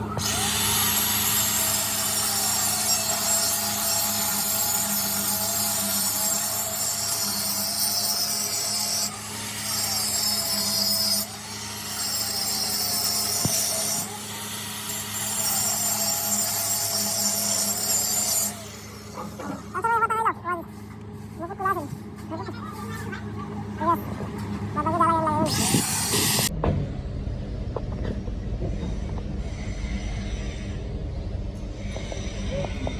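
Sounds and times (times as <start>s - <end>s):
welding arc crackling and hissing: 25.4s - 26.5s.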